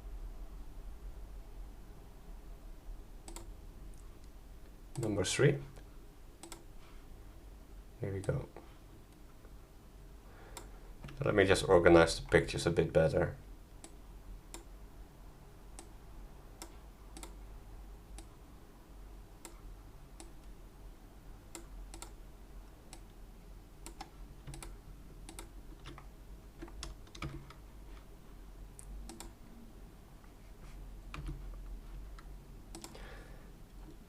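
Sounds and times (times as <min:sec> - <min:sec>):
low steady hum: 0:00.0 - 0:34.0
mouse and keyboard clicking: 0:03.3 - 0:03.5, 0:06.4 - 0:06.6, 0:21.5 - 0:22.2, 0:29.1 - 0:29.3, 0:32.2 - 0:33.0.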